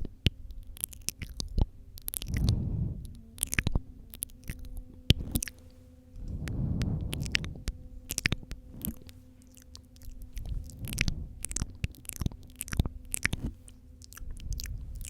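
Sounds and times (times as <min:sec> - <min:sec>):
wet mouth clicks and smacks: 0:00.0 - 0:15.0
soft rushing sound: 0:02.3 - 0:04.0, 0:04.9 - 0:12.0.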